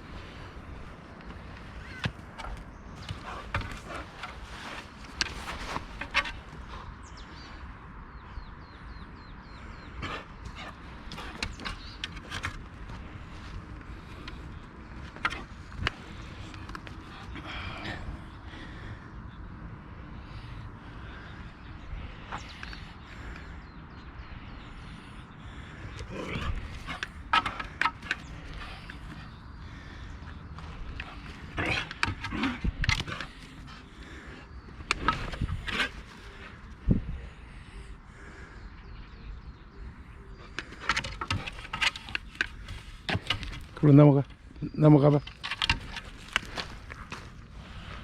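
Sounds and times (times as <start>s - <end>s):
rustling: 1.3s - 6.6s
sharp animal calls: 1.7s - 6.8s.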